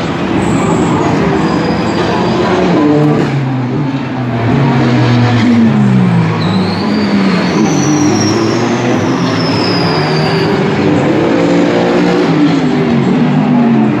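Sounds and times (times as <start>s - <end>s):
race car engines: 0.0s - 14.0s
high squeal sliding down: 6.4s - 10.7s.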